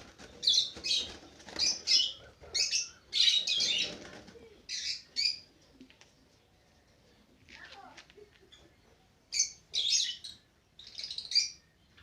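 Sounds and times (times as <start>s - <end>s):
doves flapping wings: 0.0s - 1.9s, 3.6s - 4.6s.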